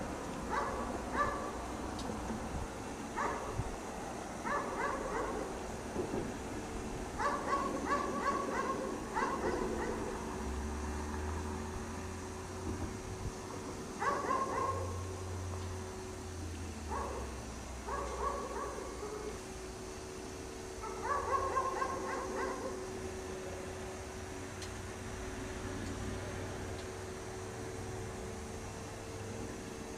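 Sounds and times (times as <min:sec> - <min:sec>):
dog barking: 0:00.5 - 0:01.6, 0:03.2 - 0:03.6, 0:04.4 - 0:05.5, 0:07.2 - 0:10.2, 0:14.0 - 0:15.0, 0:16.9 - 0:17.3, 0:17.9 - 0:19.4, 0:20.8 - 0:22.8.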